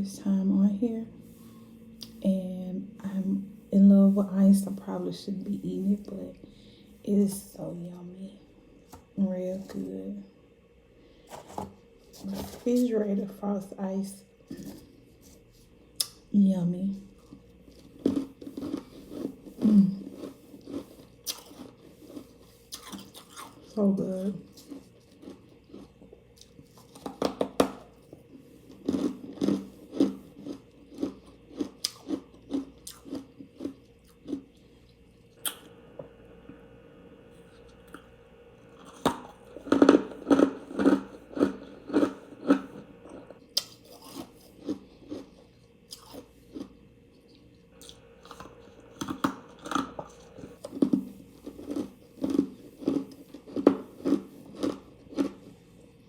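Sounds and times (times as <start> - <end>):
chewing crunchy ice: 17.1 - 35.6, 38.7 - 56.0.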